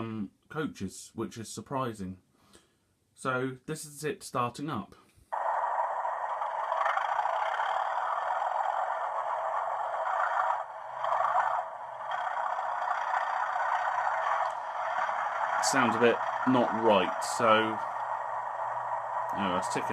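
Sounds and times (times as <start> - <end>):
thin buzzing diesel engine sound: 5.4 - 19.9.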